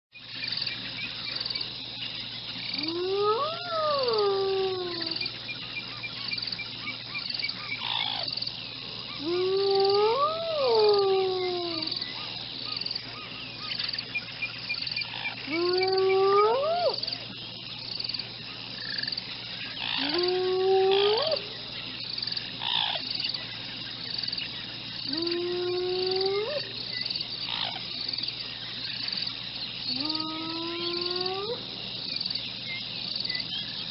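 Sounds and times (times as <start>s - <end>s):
insects chirping: 0.1s - 33.9s
hyena whooping: 2.8s - 5.3s, 9.2s - 12.1s, 15.5s - 17.2s, 19.9s - 21.5s, 25.1s - 26.8s, 29.9s - 31.6s.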